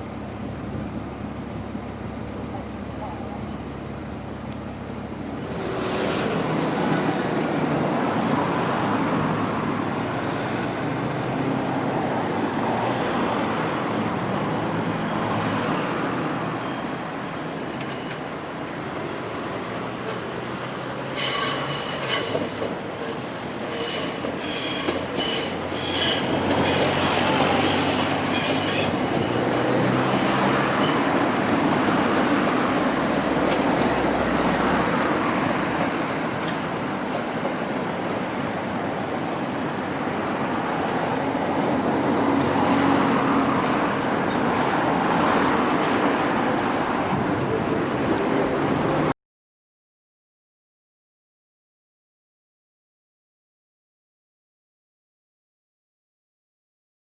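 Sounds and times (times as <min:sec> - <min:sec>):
train rail noise: 0:00.0 - 0:49.1
train wheels squealing: 0:16.5 - 0:18.4, 0:21.1 - 0:29.7, 0:30.6 - 0:31.2.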